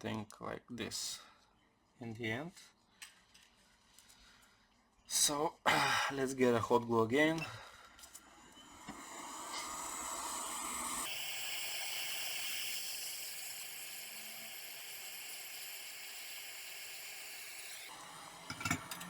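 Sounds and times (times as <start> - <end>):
steady hiss: 8.9 - 18.5.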